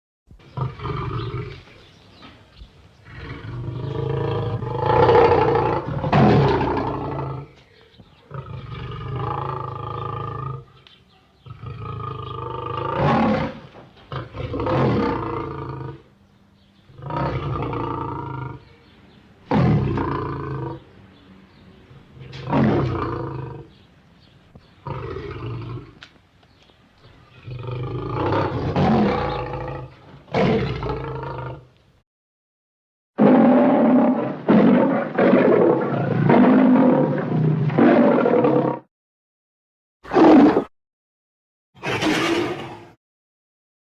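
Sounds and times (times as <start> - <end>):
lion roaring and growling: 0.4 - 1.7, 3.0 - 7.5, 8.2 - 10.7, 11.4 - 16.1, 16.9 - 18.7, 19.5 - 20.9, 22.1 - 23.8, 24.8 - 26.0, 27.4 - 31.7, 33.2 - 38.9, 40.1 - 40.7, 41.8 - 43.0.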